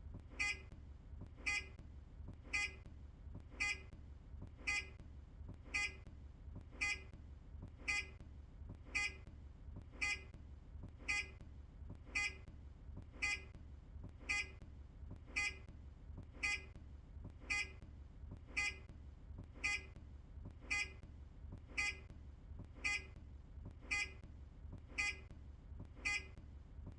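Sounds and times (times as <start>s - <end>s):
bus indicator beeping: 0.3s - 0.7s, 1.4s - 1.8s, 2.4s - 2.8s, 3.5s - 3.9s, 4.6s - 5.0s, 5.6s - 6.0s, 6.7s - 7.1s, 7.8s - 8.2s, 8.8s - 9.2s, 10.0s - 10.3s, 11.0s - 11.4s, 12.1s - 12.5s, 13.1s - 13.6s, 14.2s - 14.6s, 15.3s - 15.7s, 16.4s - 16.8s, 17.4s - 17.8s, 18.5s - 18.9s, 19.6s - 20.0s, 20.6s - 21.0s, 21.7s - 22.1s, 22.8s - 23.2s, 23.8s - 24.2s, 24.8s - 25.3s, 25.9s - 26.4s.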